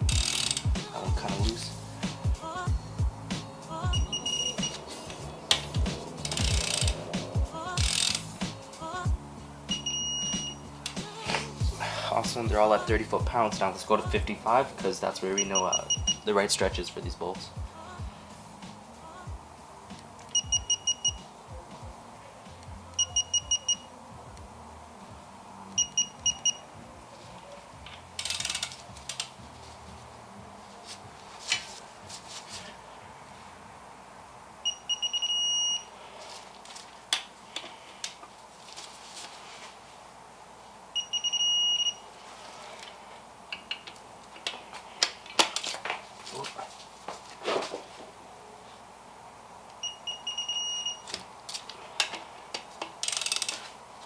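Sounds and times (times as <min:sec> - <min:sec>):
torque wrench beeping: 0:00.0 - 0:00.8, 0:03.9 - 0:04.9, 0:05.5 - 0:08.4, 0:09.7 - 0:11.0, 0:15.4 - 0:16.3, 0:20.3 - 0:21.2, 0:23.0 - 0:23.9, 0:25.8 - 0:26.6, 0:28.2 - 0:29.2, 0:34.7 - 0:35.9, 0:41.0 - 0:42.0, 0:49.8 - 0:51.1
metal tool clicks and clanks: 0:05.5 - 0:07.0.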